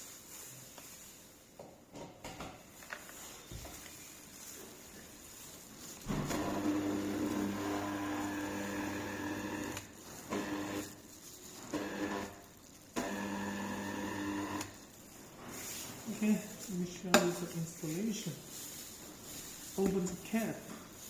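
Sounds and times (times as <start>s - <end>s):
juicer motor humming: 6.1s - 10.9s, 11.7s - 12.4s, 13.0s - 14.7s.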